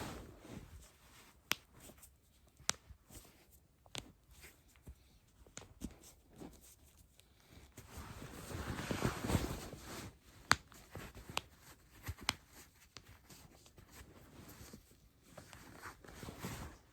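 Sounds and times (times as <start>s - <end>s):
clothes rustling: 0.0s - 2.3s, 2.9s - 16.9s.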